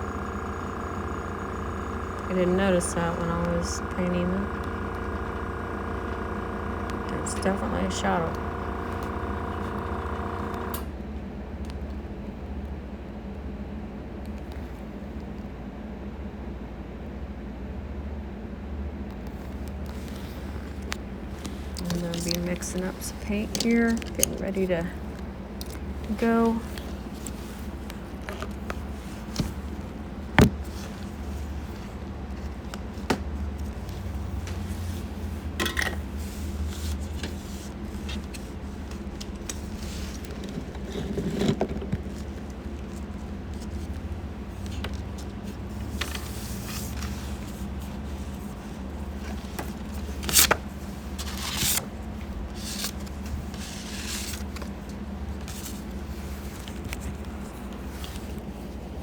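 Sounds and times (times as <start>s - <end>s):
steady low hum: 0.0s - 11.6s.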